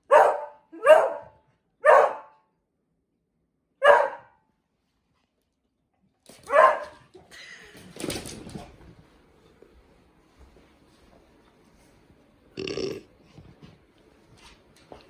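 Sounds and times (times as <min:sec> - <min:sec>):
dog barking: 0:00.0 - 0:02.4, 0:03.8 - 0:04.4, 0:06.4 - 0:07.0.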